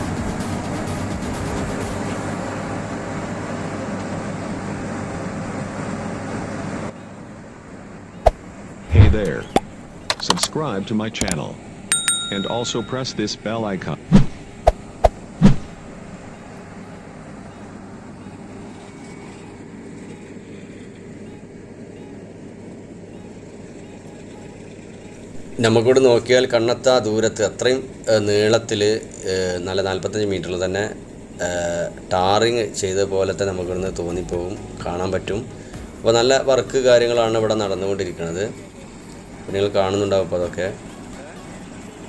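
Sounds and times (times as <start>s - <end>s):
road traffic noise: 0.0s - 42.0s
vehicle engine rumble: 0.0s - 42.0s.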